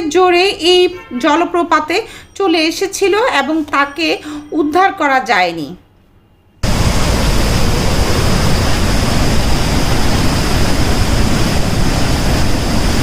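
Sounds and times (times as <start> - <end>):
waterfall roaring: 6.6 - 13.0.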